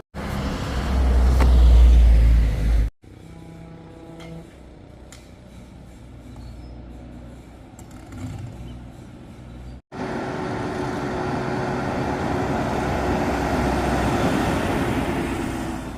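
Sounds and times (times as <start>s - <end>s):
diesel engine humming: 0.2s - 15.9s.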